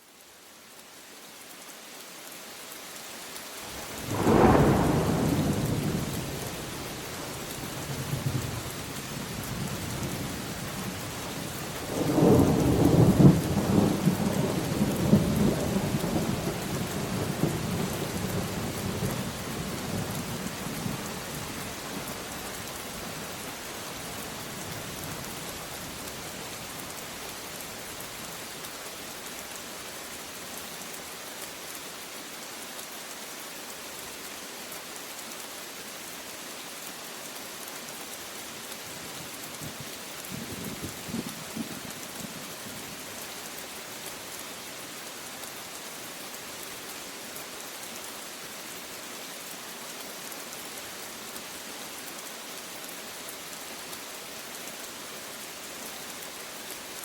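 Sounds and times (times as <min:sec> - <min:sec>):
steady rain: 0:00.0 - 0:57.0
thunder rumbling: 0:04.0 - 0:06.7.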